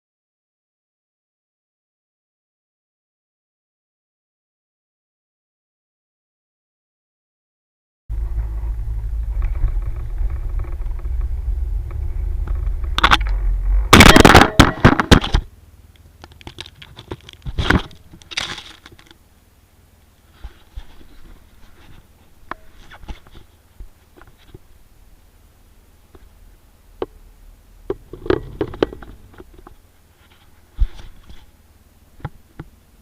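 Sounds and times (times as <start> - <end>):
vehicle engine running: 8.1 - 14.2, 19.2 - 30.2
loud crackling and scraping: 8.1 - 15.5, 16.2 - 19.2
faint clicks and scrapes: 8.2 - 13.9, 16.0 - 19.2, 20.3 - 24.7, 27.9 - 31.6.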